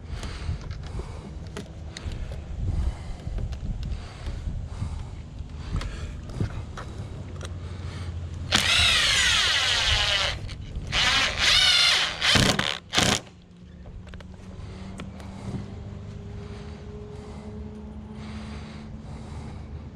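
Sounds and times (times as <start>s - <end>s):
power drill running: 8.5s - 13.3s.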